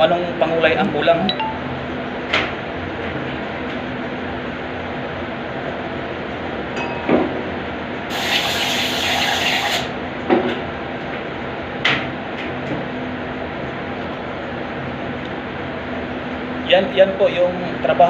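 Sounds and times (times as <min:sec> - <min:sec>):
steady hum: 0:00.0 - 0:18.0
hissing spray burst: 0:08.1 - 0:09.9.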